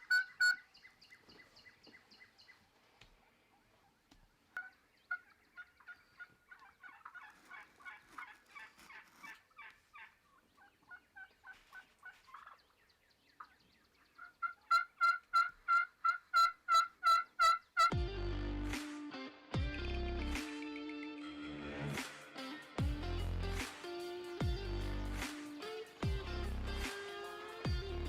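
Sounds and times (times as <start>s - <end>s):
turkey yelping: 0.0s - 0.6s, 4.6s - 12.7s, 14.2s - 17.9s.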